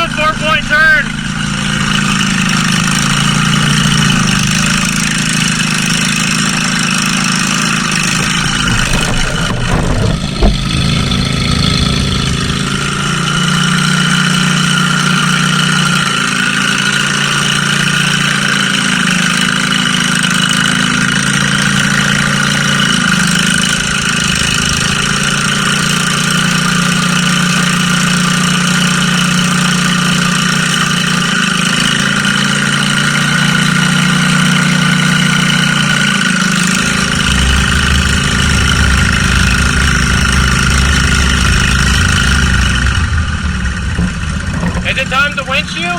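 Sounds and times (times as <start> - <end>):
small mower engine running: 0.0 - 45.9
deep low rumble: 6.0 - 13.8, 23.1 - 27.5, 36.6 - 45.9.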